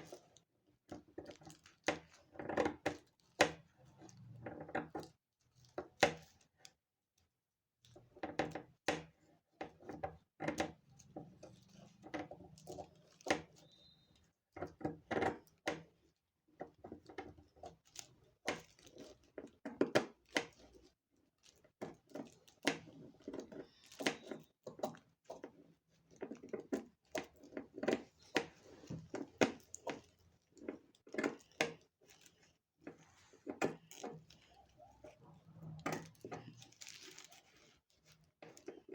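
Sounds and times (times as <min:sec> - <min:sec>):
tissue paper rustling: 0:36.6 - 0:37.8.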